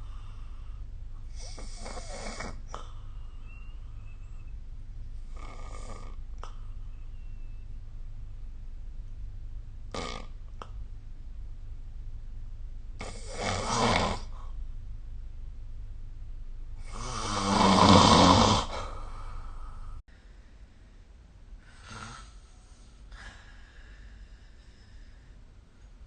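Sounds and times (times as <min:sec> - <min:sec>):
steady low hum: 0:00.0 - 0:26.0
person snoring: 0:13.0 - 0:14.4, 0:16.8 - 0:20.0.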